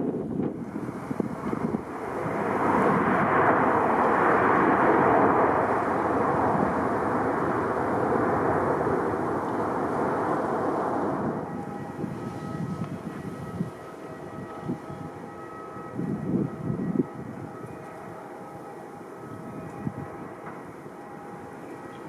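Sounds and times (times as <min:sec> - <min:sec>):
jet engines roaring: 0:00.0 - 0:15.3.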